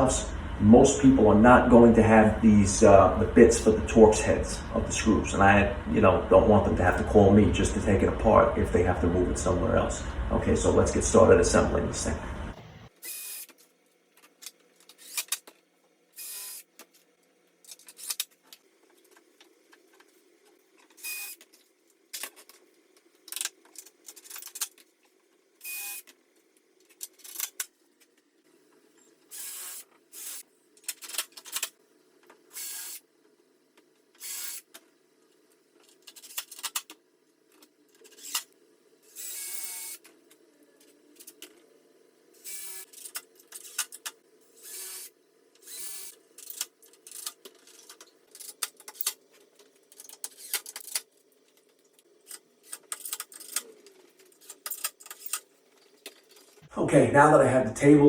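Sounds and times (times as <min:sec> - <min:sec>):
cordless drill driving screws: 0:13.0 - 0:13.5, 0:29.3 - 0:30.4, 0:32.6 - 0:33.0, 0:34.2 - 0:34.6, 0:39.1 - 0:40.0, 0:42.4 - 0:42.8, 0:44.6 - 0:46.2
parts and screws clicking: 0:14.2 - 0:15.6, 0:16.2 - 0:17.0, 0:17.6 - 0:19.3, 0:23.2 - 0:24.9, 0:26.8 - 0:27.7, 0:29.2 - 0:33.0, 0:34.1 - 0:34.8, 0:35.8 - 0:38.5, 0:42.4 - 0:56.6.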